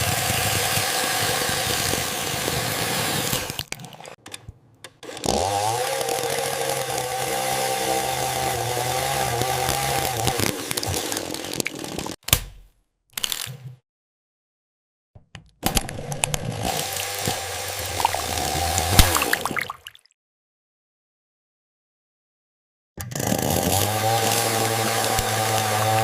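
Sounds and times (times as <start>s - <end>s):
chainsaw cutting: 0.0s - 3.6s, 5.0s - 12.2s, 15.7s - 19.5s, 23.0s - 26.0s
chainsaw motor revving: 0.0s - 3.6s, 5.0s - 12.2s, 15.7s - 19.4s, 23.0s - 26.0s.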